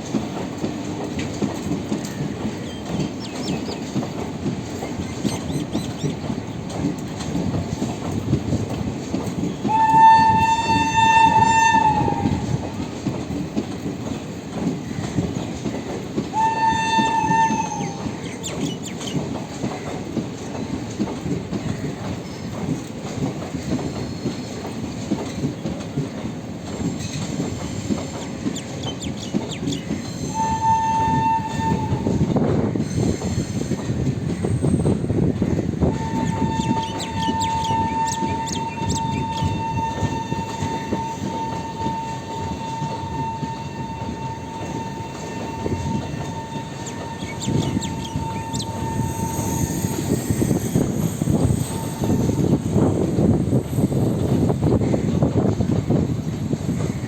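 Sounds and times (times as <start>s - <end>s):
train coaches rumbling and clacking: 0.0s - 57.0s
train horn blasts: 9.6s - 12.9s, 16.3s - 18.3s, 30.1s - 33.8s, 35.8s - 53.0s.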